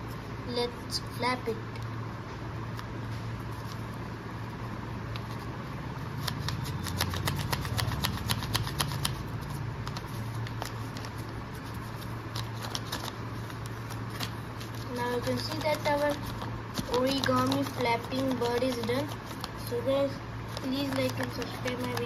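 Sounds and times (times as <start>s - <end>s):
steady low hum: 0.0s - 22.0s
paper crackling: 5.1s - 22.0s.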